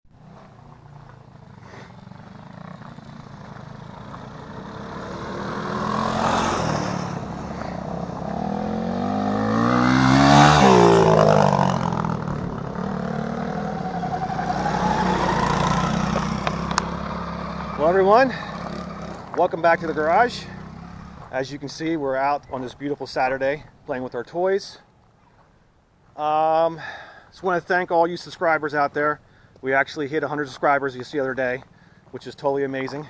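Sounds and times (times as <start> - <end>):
atv engine passing by: 0.2 - 21.9.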